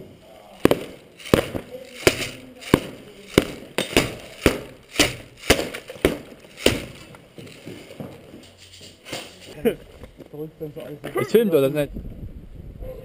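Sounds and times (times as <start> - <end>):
footsteps at walking pace: 0.6 - 10.3.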